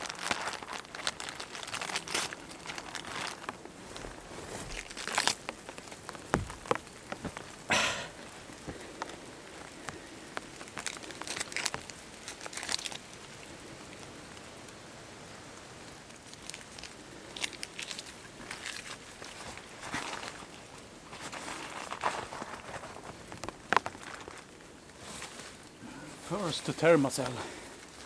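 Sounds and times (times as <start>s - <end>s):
gear rustling and crinkling: 0.0s - 14.8s, 15.7s - 28.0s
steady rain falling: 0.0s - 28.0s.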